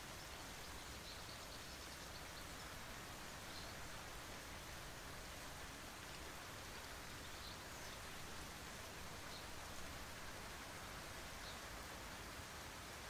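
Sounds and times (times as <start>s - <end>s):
rain falling: 0.0s - 13.0s.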